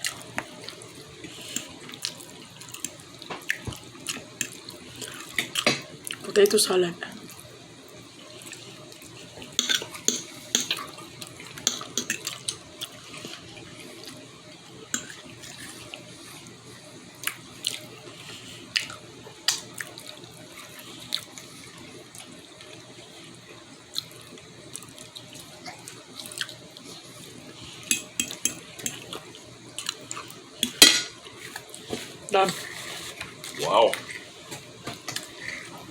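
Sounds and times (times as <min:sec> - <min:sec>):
utensils tapping on a plate: 0:09.6 - 0:10.8, 0:11.7 - 0:12.6, 0:27.9 - 0:29.0, 0:30.6 - 0:31.2.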